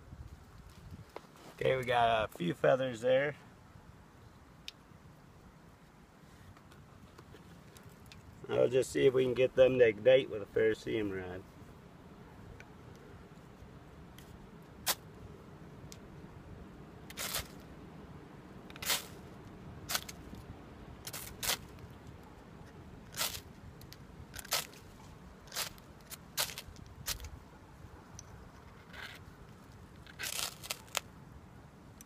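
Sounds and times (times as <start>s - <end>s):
ferrocerium rod scraping: 17.1s - 17.6s, 21.0s - 22.0s, 22.6s - 27.3s, 28.3s - 31.1s.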